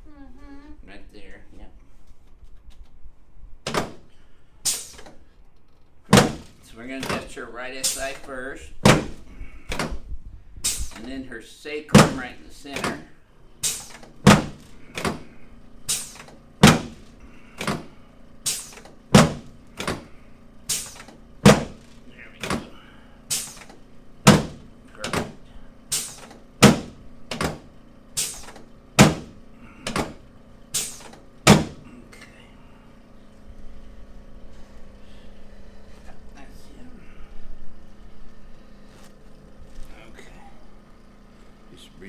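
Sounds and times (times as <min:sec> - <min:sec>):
sharp clicks of chiropractic adjustments: 0:03.7 - 0:10.0, 0:10.6 - 0:11.2, 0:12.0 - 0:32.3.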